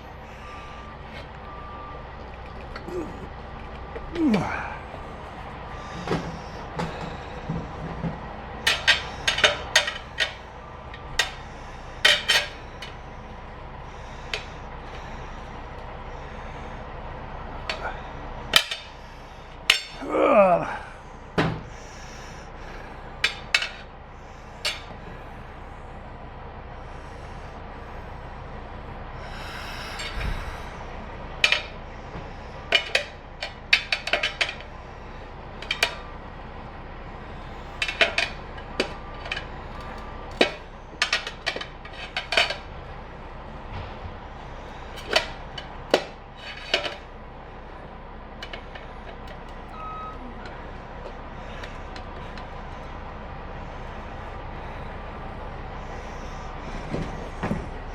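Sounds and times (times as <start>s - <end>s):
metal tools clinking: 8.6s - 10.4s, 12.0s - 13.0s, 18.5s - 19.0s, 19.6s - 20.0s, 37.7s - 42.6s, 45.0s - 47.0s
falling squeak: 49.7s - 50.4s.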